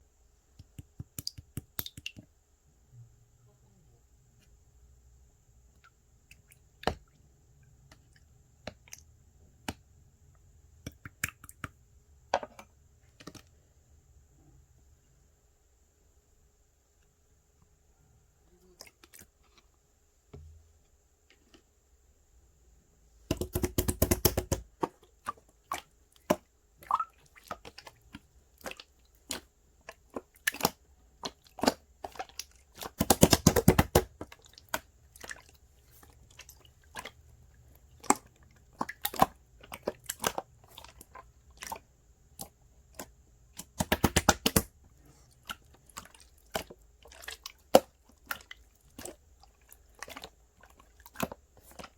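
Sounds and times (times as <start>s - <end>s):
slime squished by hand: 23.3s - 37.2s, 37.9s - 51.9s
slime crackling pops: 43.6s - 44.7s.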